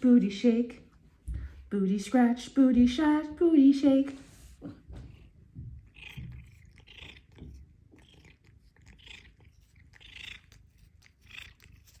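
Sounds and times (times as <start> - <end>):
soft scratchy rustles: 3.9 - 6.6
cat purring: 4.5 - 12.0.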